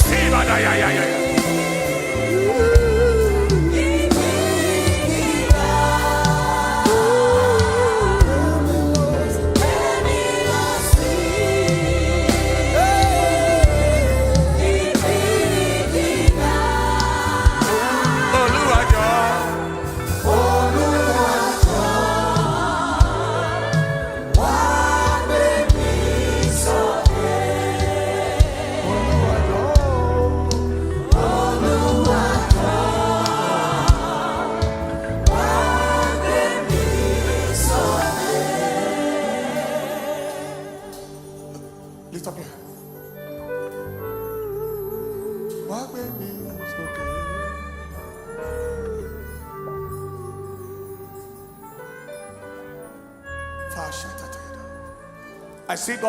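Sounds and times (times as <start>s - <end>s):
person singing: 0.0s - 11.5s, 17.7s - 22.4s
deep bass notes: 0.0s - 38.2s
choir and congregation singing: 0.0s - 46.8s
keyboard: 0.0s - 56.0s.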